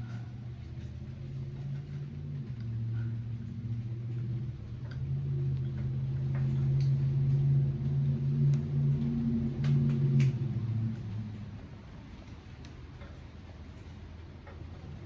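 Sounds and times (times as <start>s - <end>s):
engine running steadily: 0.0s - 15.0s
light ticks and clicks: 0.0s - 15.0s.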